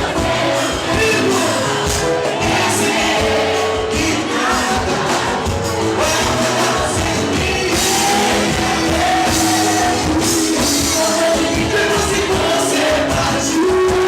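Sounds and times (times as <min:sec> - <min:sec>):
live samba band playing: 0:00.0 - 0:14.0
person singing: 0:00.0 - 0:14.0.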